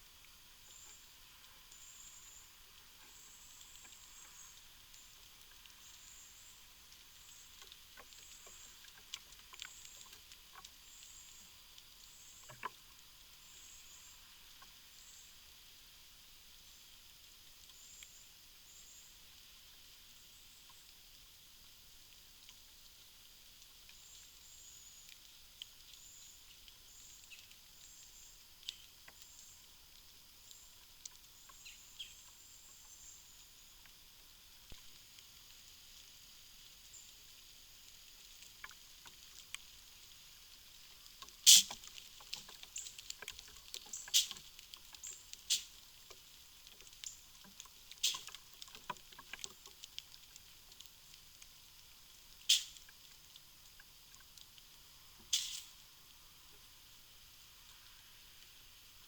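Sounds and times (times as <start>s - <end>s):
small clicks and rustles: 0.0s - 59.0s
high-pitched insect call: 55.3s - 55.8s.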